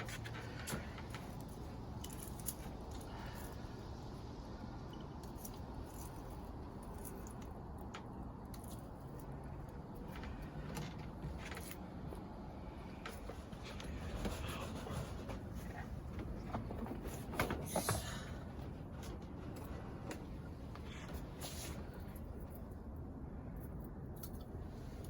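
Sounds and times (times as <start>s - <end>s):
plants clicking and snapping: 0.0s - 15.4s.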